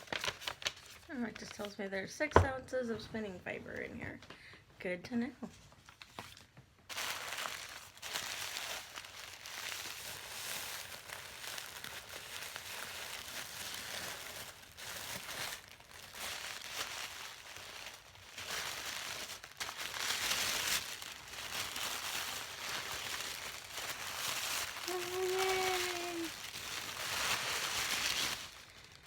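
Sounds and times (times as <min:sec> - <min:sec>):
packaging crinkling and rustling: 0:00.0 - 0:01.8, 0:05.5 - 0:29.0.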